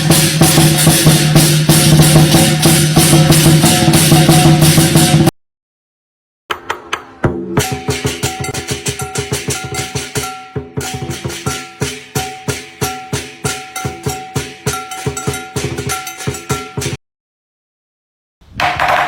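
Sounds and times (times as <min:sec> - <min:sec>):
quick drum strokes: 0:00.0 - 0:05.3.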